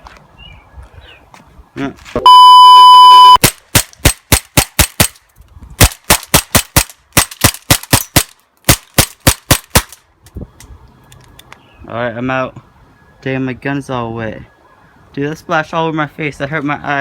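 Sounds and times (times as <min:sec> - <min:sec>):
electronic beep: 0:02.2 - 0:03.4.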